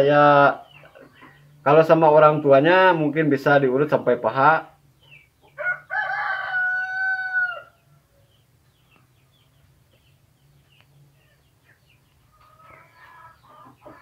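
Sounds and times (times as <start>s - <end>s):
rooster crowing: 5.6s - 7.9s.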